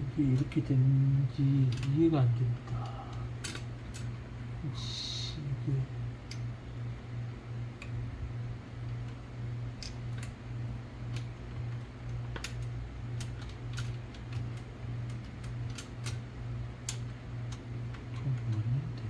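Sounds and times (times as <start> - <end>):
steady low hum: 0.0 - 19.0
typewriter mechanism clicks: 0.2 - 4.1, 11.1 - 19.0.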